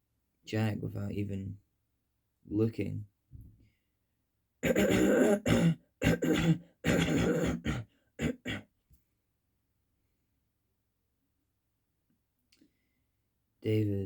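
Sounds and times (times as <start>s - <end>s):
man clearing throat and coughing: 4.6s - 8.7s.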